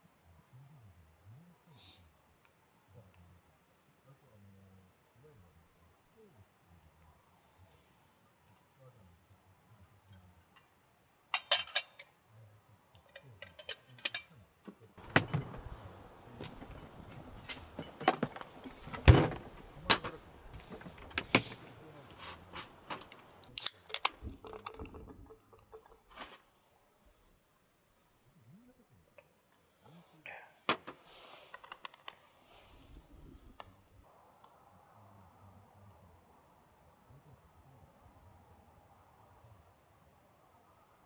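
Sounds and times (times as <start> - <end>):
metal camp gear clinking: 11.4 - 12.1, 13.0 - 14.3, 15.0 - 26.4.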